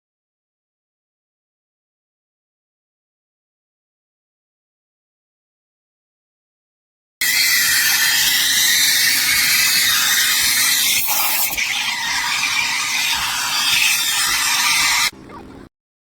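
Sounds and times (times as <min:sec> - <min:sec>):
steam wand hissing: 0:07.2 - 0:15.1.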